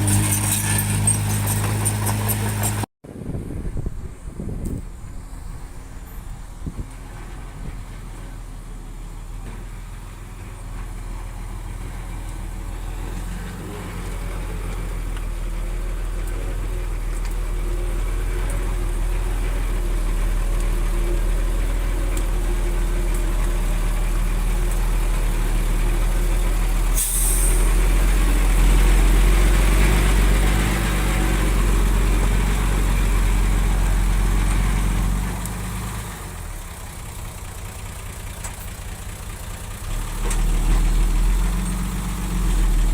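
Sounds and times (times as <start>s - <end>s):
heavy diesel engine under load: 0.0s - 42.9s
short sharp hiss: 27.0s - 27.7s.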